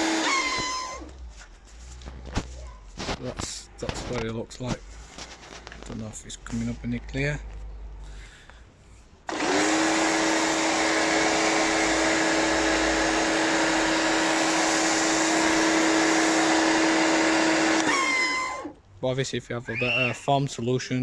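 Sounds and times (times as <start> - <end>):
pressure washer motor humming: 0.0 - 1.1, 9.3 - 18.7.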